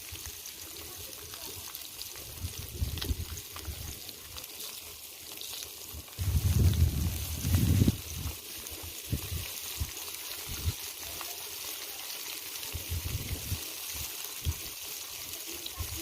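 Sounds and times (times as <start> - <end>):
fish sizzling in hot oil: 0.0 - 16.0
low rumble: 6.2 - 8.0.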